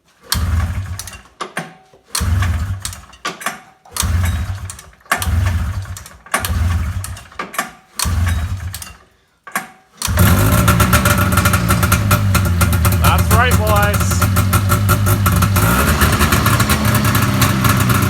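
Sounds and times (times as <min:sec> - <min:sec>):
recoil starter pulls cranking: 0:00.2 - 0:18.0
two-stroke engine running: 0:02.2 - 0:02.9, 0:04.0 - 0:07.1, 0:10.1 - 0:18.0.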